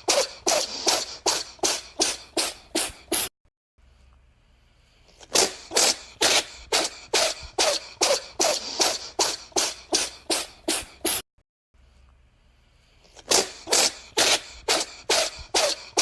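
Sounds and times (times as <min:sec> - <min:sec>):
cat sneezing: 0:00.0 - 0:03.3, 0:05.1 - 0:11.2, 0:13.1 - 0:16.0.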